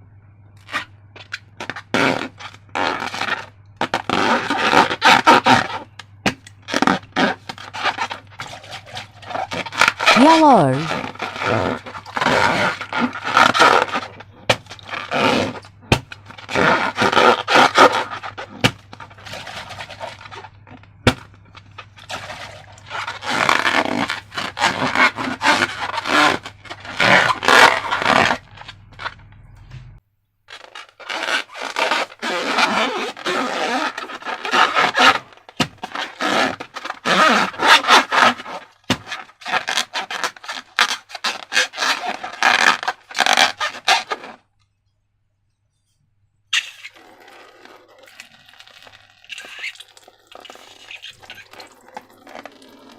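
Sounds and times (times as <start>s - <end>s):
faint low hum: 0.0s - 30.5s
slime squishing and scraping: 0.6s - 29.3s, 30.5s - 44.5s, 46.5s - 52.9s.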